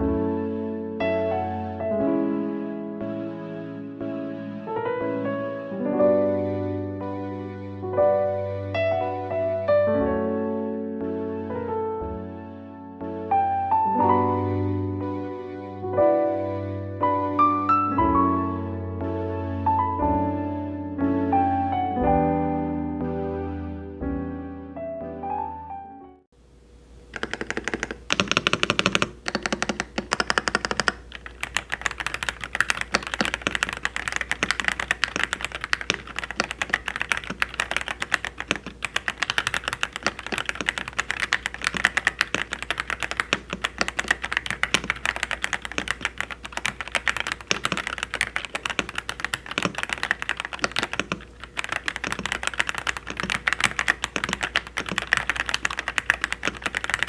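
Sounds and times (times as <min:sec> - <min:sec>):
fast mechanical keyboard typing: 0:27.1 - 0:57.0.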